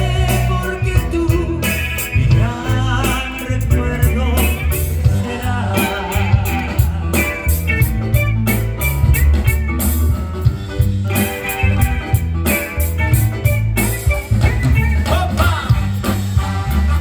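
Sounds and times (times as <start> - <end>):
bass line: 0.0 - 17.0
drum kit hits: 0.0 - 17.0
guitar: 0.0 - 17.0.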